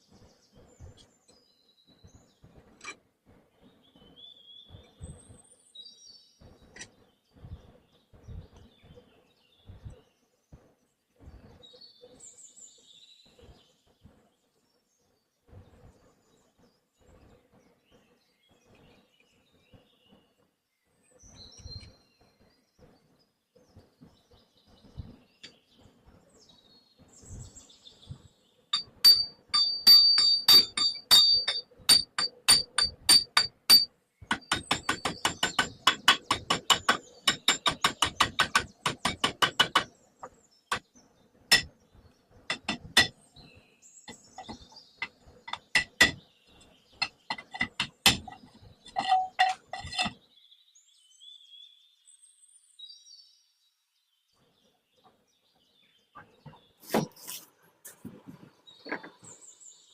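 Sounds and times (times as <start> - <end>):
hammer striking metal: 28.8 - 39.9, 42.5 - 43.2, 45.5 - 46.2, 47.0 - 48.4.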